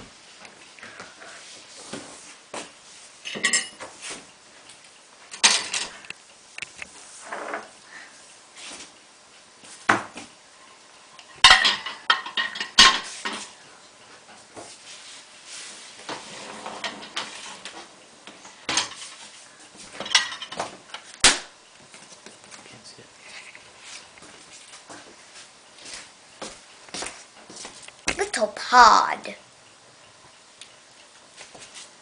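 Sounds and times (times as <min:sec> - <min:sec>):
dishes and cutlery clattering: 0:03.3 - 0:03.8, 0:11.4 - 0:13.4, 0:20.0 - 0:20.7.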